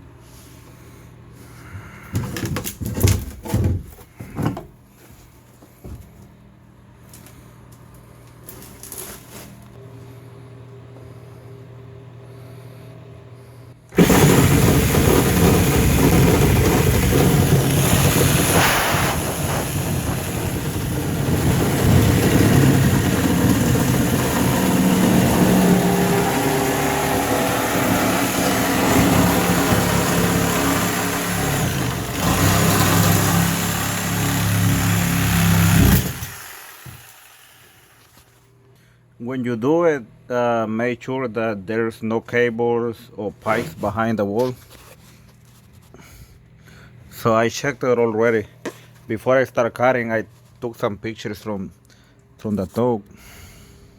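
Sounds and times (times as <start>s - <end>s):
power saw cutting: 14.0s - 38.3s.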